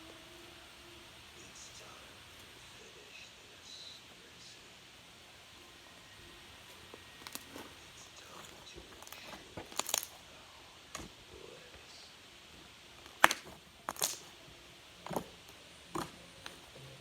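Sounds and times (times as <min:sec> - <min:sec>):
small objects clicking and tapping: 0:07.2 - 0:07.7, 0:08.9 - 0:10.2, 0:13.0 - 0:14.3.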